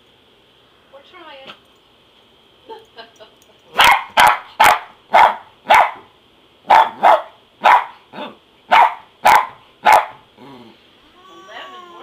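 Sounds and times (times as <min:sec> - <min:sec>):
dog barking sharply: 0:03.8 - 0:06.1, 0:06.7 - 0:10.2.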